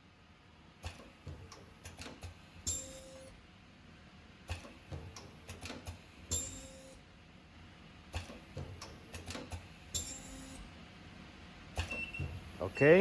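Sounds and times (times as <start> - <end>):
machine clicks and knocks: 0.8 - 2.9, 4.5 - 6.5, 8.1 - 10.2
ultrasonic welder high-pitched whine: 2.7 - 3.4, 6.3 - 7.1, 10.0 - 10.8.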